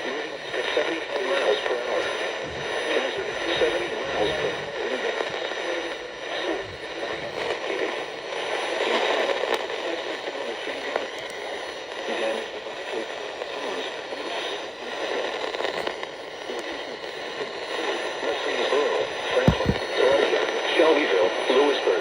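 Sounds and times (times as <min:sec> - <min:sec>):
radio static hiss: 0:00.0 - 0:22.0
broadcast voice reading: 0:19.5 - 0:19.9.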